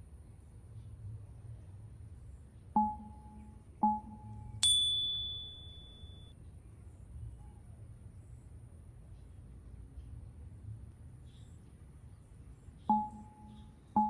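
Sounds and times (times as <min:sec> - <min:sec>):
chime dings: 0:02.8 - 0:06.3, 0:12.9 - 0:14.0.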